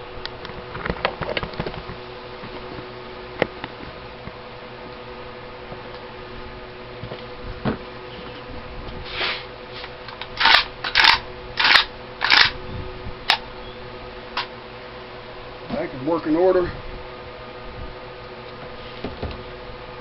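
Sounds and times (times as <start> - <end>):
rifle action metallic clacks: 10.3 - 12.6.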